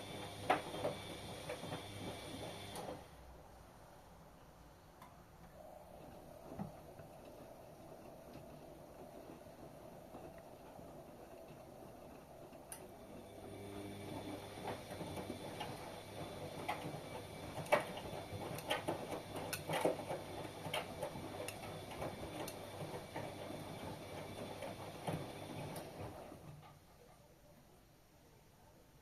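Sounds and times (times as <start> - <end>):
washing machine motor hum: 0.0 - 4.2, 4.8 - 26.9.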